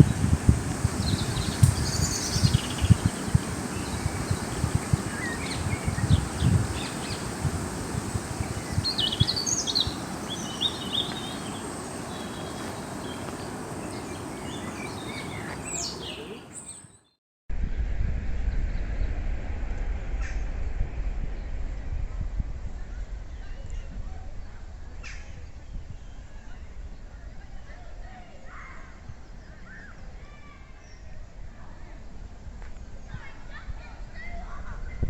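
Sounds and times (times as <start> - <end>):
low rumble on microphone: 0.0 - 12.4, 17.5 - 35.0
small birds chirping: 0.0 - 17.2.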